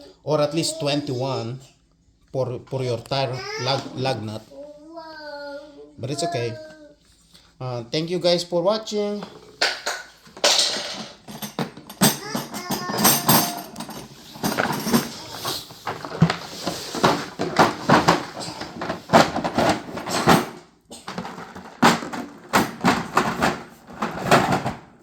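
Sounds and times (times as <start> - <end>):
hard objects clattering: 9.2 - 25.0.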